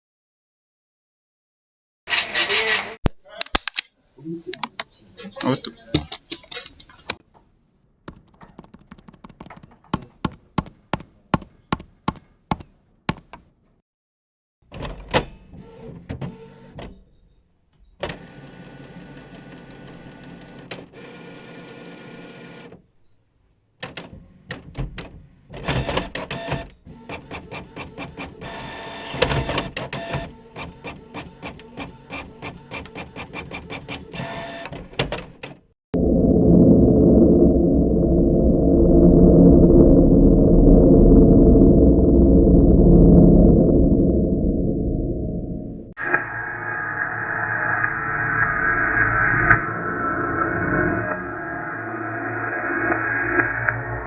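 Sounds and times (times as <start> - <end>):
printer motor whirring: 25.6 - 34.8.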